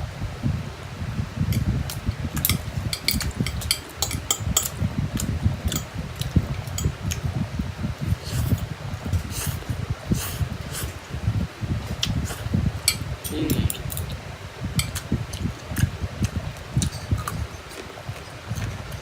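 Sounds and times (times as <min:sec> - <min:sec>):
chewing noodles: 0:14.8 - 0:19.0.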